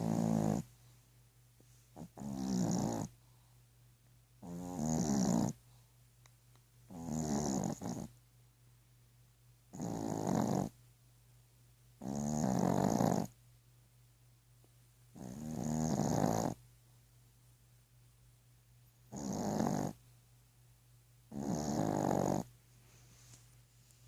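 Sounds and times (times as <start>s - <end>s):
slow snoring: 0.0s - 0.7s, 2.0s - 3.1s, 4.4s - 5.6s, 6.9s - 8.1s, 9.7s - 10.8s, 12.0s - 13.3s, 15.2s - 16.6s, 19.1s - 20.0s, 21.3s - 22.5s.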